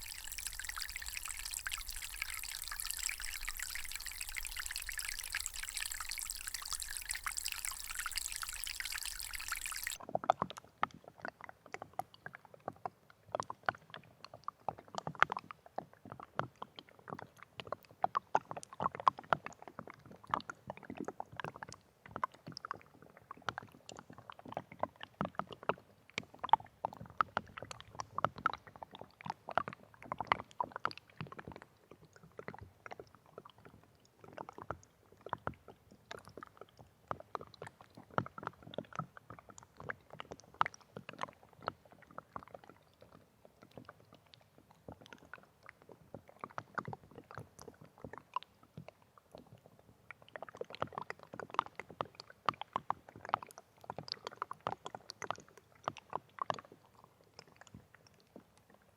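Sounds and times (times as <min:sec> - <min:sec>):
water sloshing and splashing: 0:00.0 - 0:10.0.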